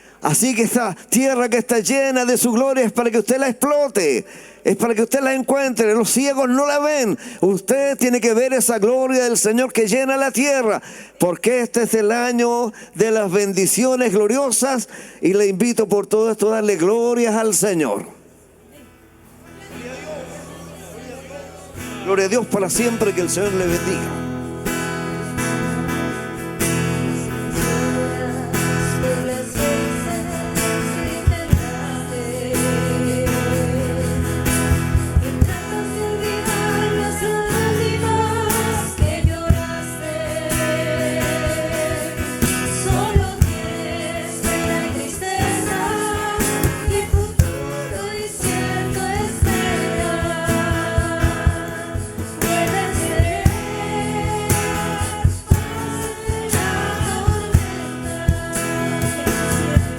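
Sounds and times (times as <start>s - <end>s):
guitar with steady beat: 21.7s - 59.9s
voices singing: 26.6s - 59.9s.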